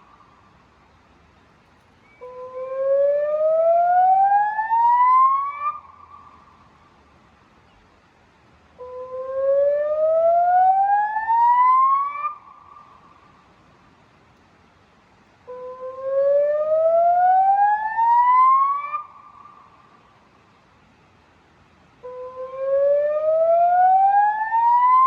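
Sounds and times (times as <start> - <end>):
rising siren tone: 22.2 - 25.0.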